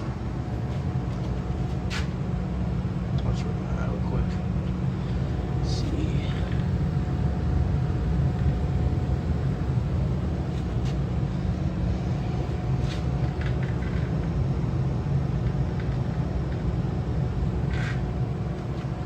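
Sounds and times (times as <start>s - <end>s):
furnace blower drone: 0.0s - 19.0s.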